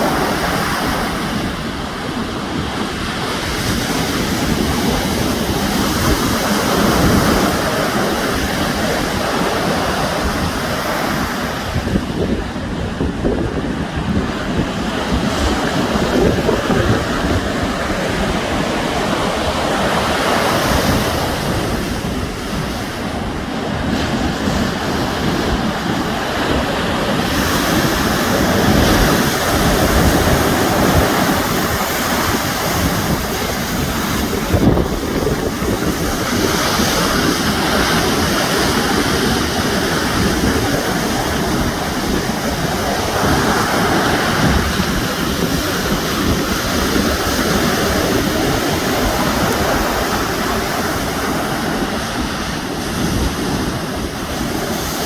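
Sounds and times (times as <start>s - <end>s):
sea waves breaking: 0.0s - 55.0s
wind buffeting microphone: 0.0s - 55.0s.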